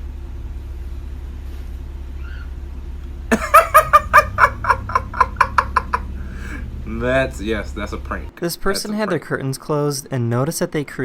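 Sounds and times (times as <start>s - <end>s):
car cabin hum: 3.4s - 8.3s.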